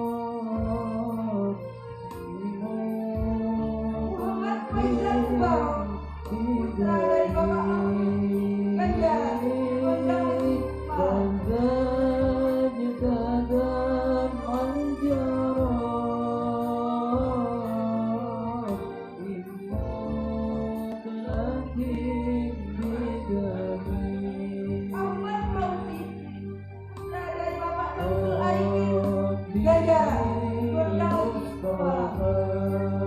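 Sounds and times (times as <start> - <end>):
man singing slow melody: 0.0 - 25.0, 28.0 - 33.0
instrumental accompaniment with bass: 0.0 - 33.0.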